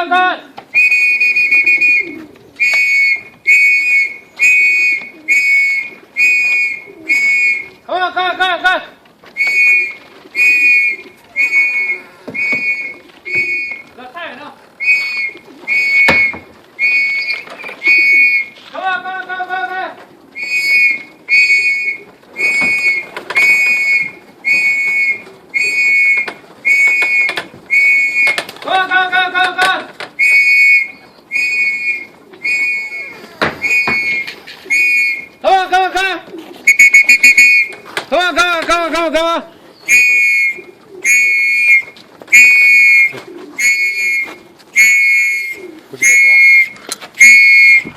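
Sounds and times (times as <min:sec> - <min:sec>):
whistle blasts: 0:00.8 - 0:07.8, 0:09.4 - 0:13.9, 0:14.8 - 0:18.6, 0:20.4 - 0:28.4, 0:30.2 - 0:35.4, 0:36.6 - 0:37.8, 0:39.9 - 0:47.9.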